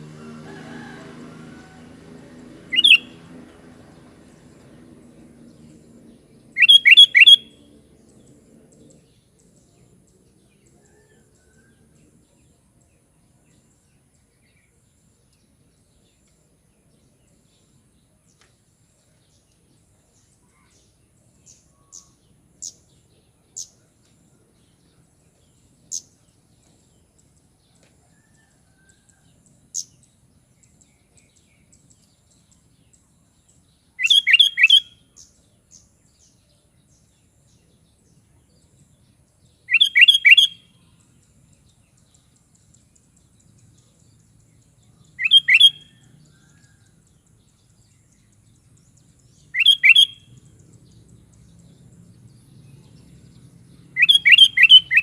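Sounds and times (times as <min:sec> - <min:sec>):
bird singing bubbling phrases: 0:02.7 - 0:03.1, 0:06.6 - 0:07.5, 0:39.7 - 0:40.6, 0:45.0 - 0:45.9, 0:49.4 - 0:50.2, 0:54.0 - 0:55.0
sharp bird calls: 0:02.7 - 0:03.3, 0:06.4 - 0:07.7, 0:34.0 - 0:35.9, 0:39.6 - 0:41.0, 0:44.9 - 0:46.7, 0:49.4 - 0:50.7, 0:53.9 - 0:55.0.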